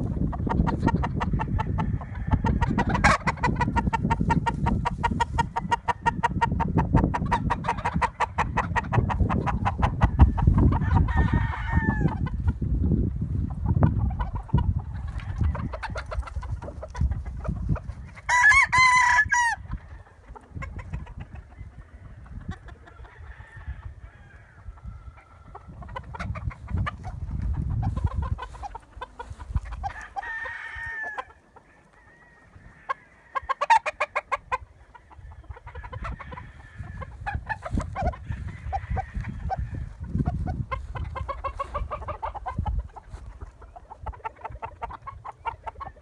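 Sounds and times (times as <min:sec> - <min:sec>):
chickens clucking: 0:00.0 - 0:46.0
rooster crowing: 0:10.8 - 0:12.1, 0:18.3 - 0:19.6, 0:23.0 - 0:25.4, 0:29.9 - 0:33.7, 0:35.8 - 0:37.2, 0:38.2 - 0:40.0.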